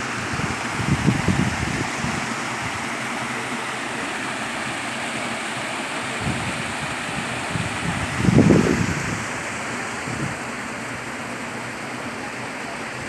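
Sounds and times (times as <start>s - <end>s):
wind buffeting microphone: 0.0s - 3.2s, 6.1s - 11.9s
waterfall roaring: 0.0s - 13.0s.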